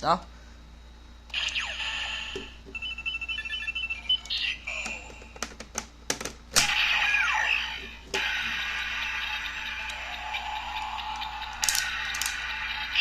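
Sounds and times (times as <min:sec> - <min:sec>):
electronic sound burst: 0:01.3 - 0:04.7, 0:06.6 - 0:13.0.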